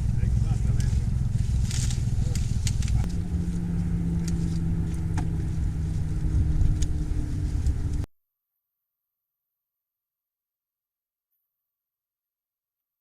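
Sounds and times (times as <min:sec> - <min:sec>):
vehicle engine running: 0:00.0 - 0:08.1.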